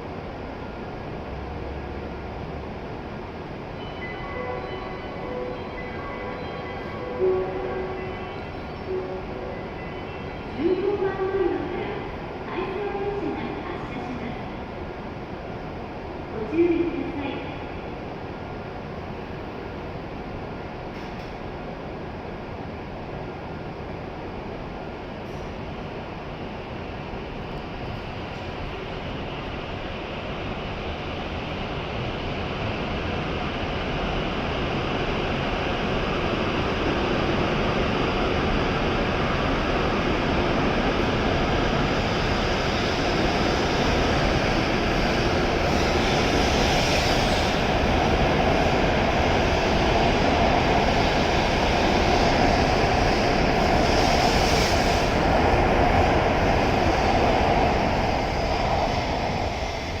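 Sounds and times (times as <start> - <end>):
train pulling out: 25.2 - 60.0.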